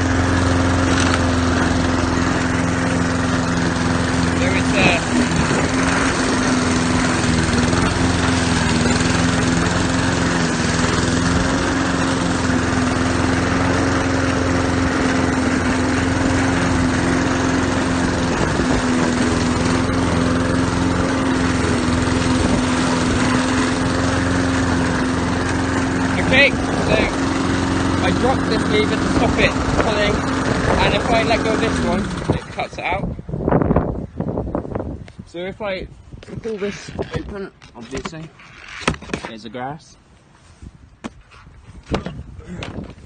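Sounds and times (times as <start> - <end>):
lawn mower engine running: 0.0 - 33.1.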